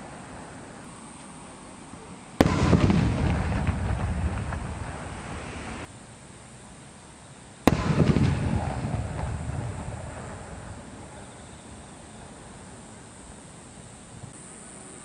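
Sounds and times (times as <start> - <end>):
firework shell bang: 2.4 - 5.9, 7.7 - 11.1
fireworks crackling rumble: 2.4 - 5.9, 7.6 - 14.4.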